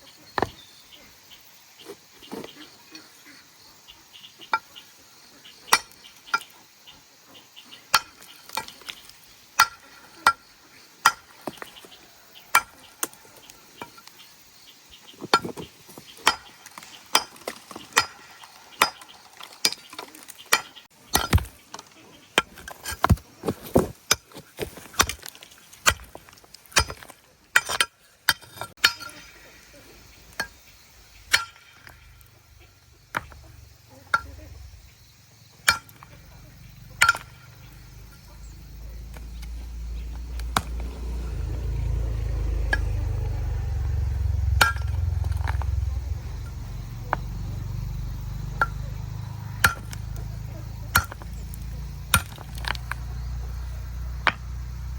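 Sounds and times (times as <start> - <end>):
blade chopping with metallic ring: 37.0 - 38.2, 44.5 - 46.1.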